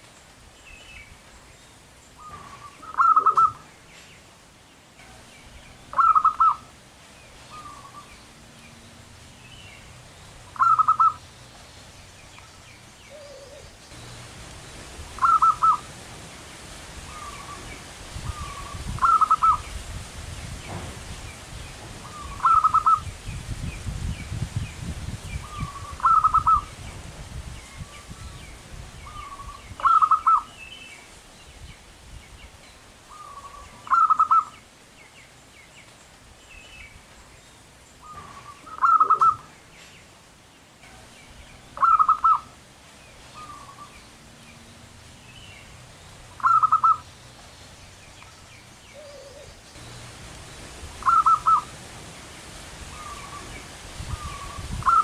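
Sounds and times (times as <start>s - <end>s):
dove cooing: 2.2s - 3.7s, 5.9s - 6.7s, 10.5s - 11.2s, 13.1s - 13.7s, 15.2s - 15.9s, 18.3s - 19.6s, 22.0s - 23.0s, 25.4s - 26.7s, 29.2s - 30.5s, 33.1s - 34.5s, 38.0s - 39.5s, 41.8s - 42.5s, 46.4s - 47.0s, 48.9s - 49.6s, 51.0s - 51.8s, 54.1s - 55.0s.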